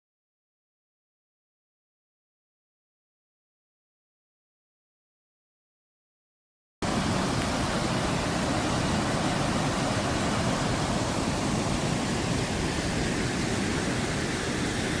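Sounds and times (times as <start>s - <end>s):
river water rushing: 6.8s - 15.0s.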